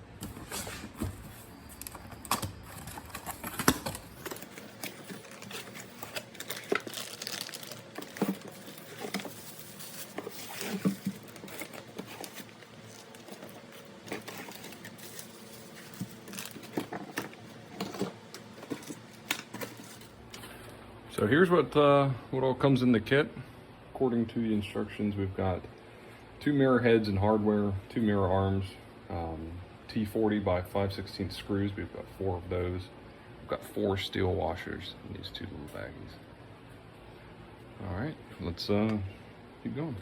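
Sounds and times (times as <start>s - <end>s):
packaging crinkling and rustling: 0.2s - 20.5s.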